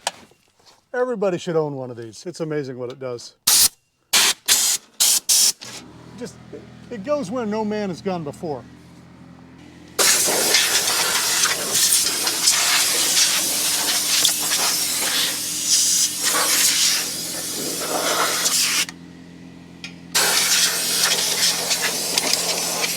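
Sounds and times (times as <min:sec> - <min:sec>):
compressed air gun hissing: 0:03.5 - 0:05.7, 0:09.9 - 0:19.0, 0:19.9 - 0:22.9.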